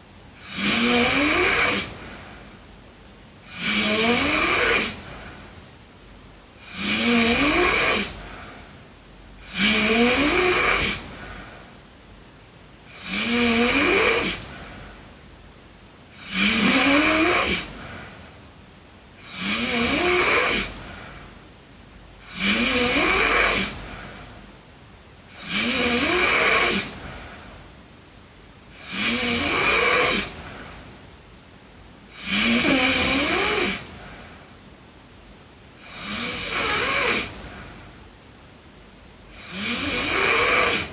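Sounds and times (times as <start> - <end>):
girl snoring: 0.4 - 2.6, 3.4 - 5.5, 6.5 - 8.7, 9.4 - 11.7, 12.8 - 15.1, 16.1 - 18.4, 19.2 - 21.4, 22.2 - 24.4, 25.3 - 27.6, 28.7 - 30.9, 32.1 - 34.5, 35.8 - 38.0, 39.3 - 40.9.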